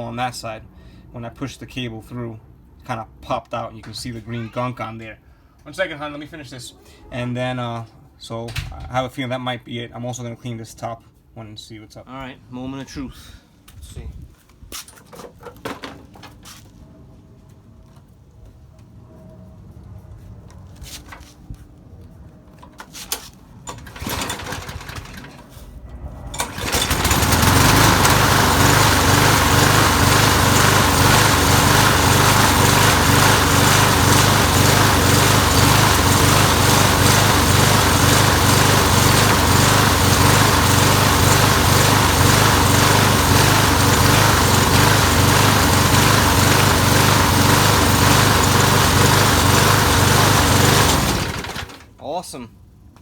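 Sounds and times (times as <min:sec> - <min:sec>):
lawn mower engine running: 0:23.7 - 0:52.0.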